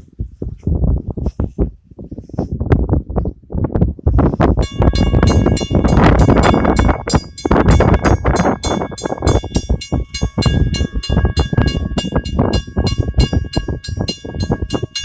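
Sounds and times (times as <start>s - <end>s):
train car rumbling on track: 4.1s - 15.0s
wheels clacking and rattling: 4.6s - 15.0s.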